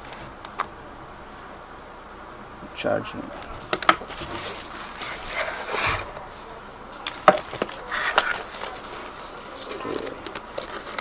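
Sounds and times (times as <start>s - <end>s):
bag rustling: 3.5s - 11.0s.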